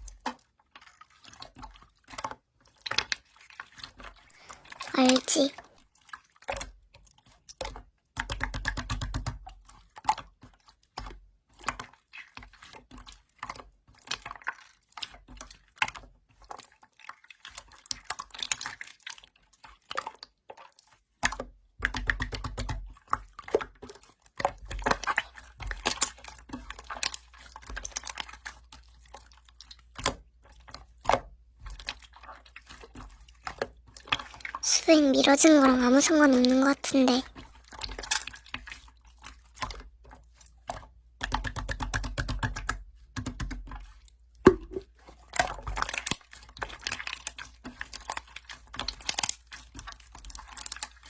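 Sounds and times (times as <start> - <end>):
slime squishing and clicking: 21.2 - 51.0.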